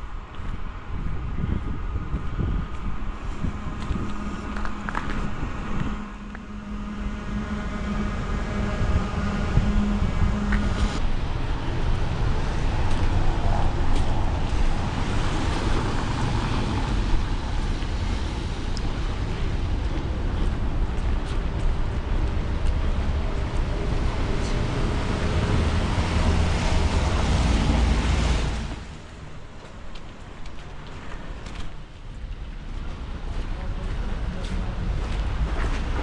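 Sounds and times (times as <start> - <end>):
vehicle engine hum: 0.0 - 36.0
vehicle passing: 3.1 - 29.6.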